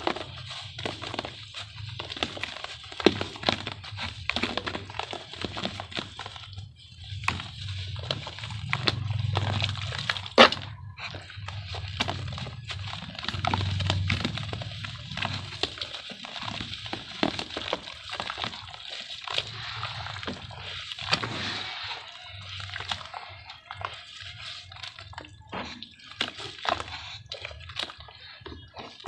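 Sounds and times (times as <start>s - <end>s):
sharp crackles and drips: 0.0s - 29.0s
cement shapes hissing in water: 16.8s - 27.7s.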